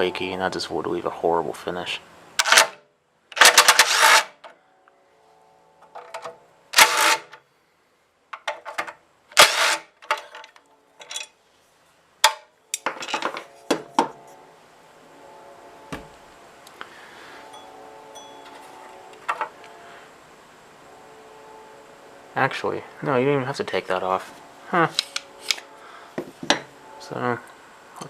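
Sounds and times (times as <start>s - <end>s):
faint metallic ringing: 4.6s - 6.7s, 12.6s - 28.0s.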